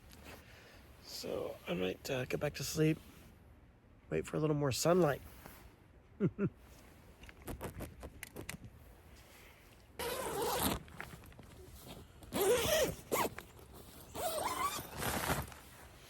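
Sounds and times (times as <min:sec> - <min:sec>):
small clicks and rustles: 0:06.7 - 0:09.9, 0:10.6 - 0:12.4
zipper being pulled: 0:10.0 - 0:11.1, 0:11.8 - 0:15.7.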